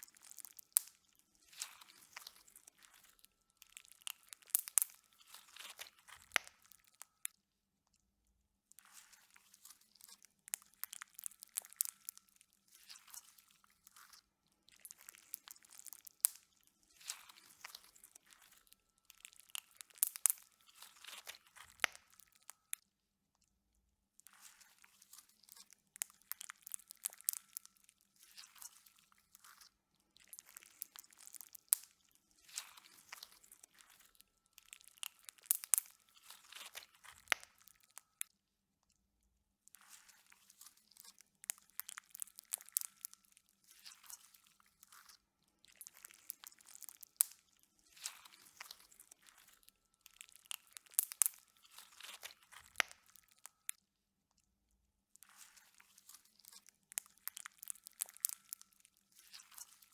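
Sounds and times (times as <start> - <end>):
slime crackling and popping: 0.0 - 7.2, 10.5 - 12.2, 14.8 - 22.7, 26.0 - 27.7, 29.4 - 38.1, 41.4 - 43.2, 45.0 - 53.6, 56.4 - 58.7.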